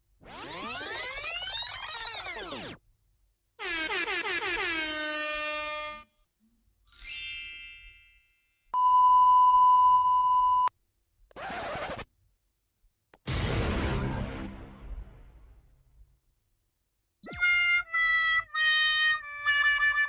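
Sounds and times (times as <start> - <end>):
censor bleep: 8.8 - 10.8.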